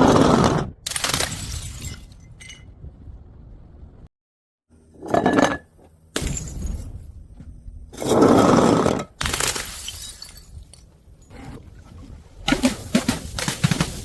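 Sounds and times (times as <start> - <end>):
glass bottles smashing: 1.2 - 2.6, 9.3 - 10.8.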